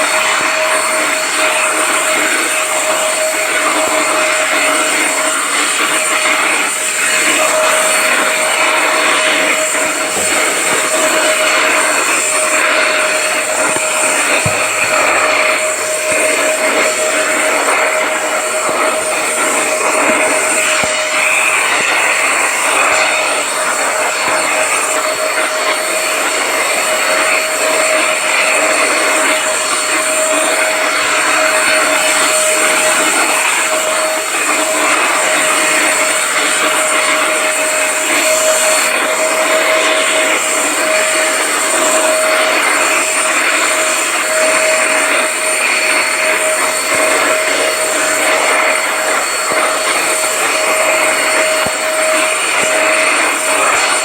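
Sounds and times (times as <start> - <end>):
vacuum cleaner running: 0.0 - 54.0.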